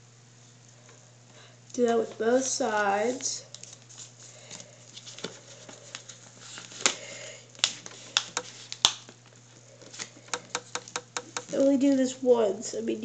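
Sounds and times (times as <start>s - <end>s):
paper rustling and crinkling: 1.8s - 10.3s.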